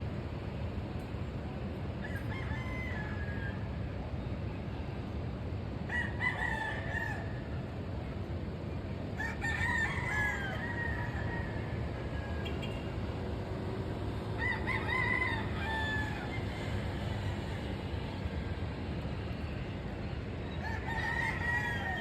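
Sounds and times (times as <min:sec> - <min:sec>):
roosters crowing: 0:02.0 - 0:03.8, 0:05.9 - 0:07.9, 0:09.2 - 0:12.9, 0:13.9 - 0:22.0.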